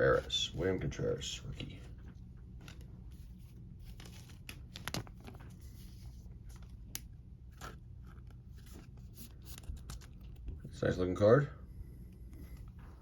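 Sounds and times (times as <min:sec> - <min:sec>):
cards rustling: 0:00.0 - 0:10.7.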